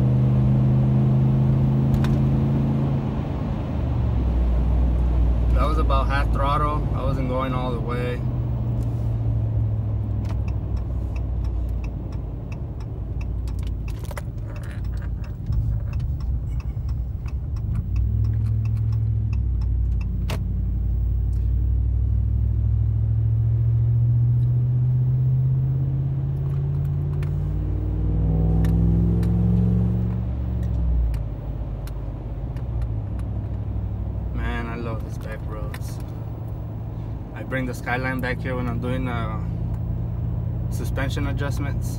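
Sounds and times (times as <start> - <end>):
truck engine accelerating: 0.0 - 41.9
light rattling clicks: 10.1 - 20.5.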